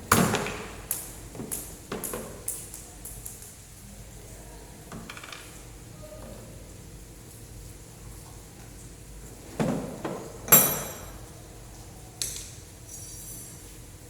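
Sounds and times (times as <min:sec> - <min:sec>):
metal tools clanking: 0:10.2 - 0:11.2.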